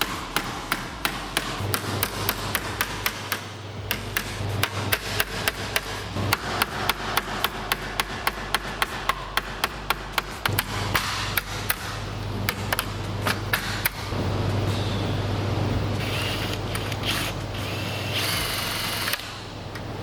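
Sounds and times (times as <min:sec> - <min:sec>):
hammer tapping on metal: 0:00.0 - 0:14.0
low steady hum: 0:00.0 - 0:20.0.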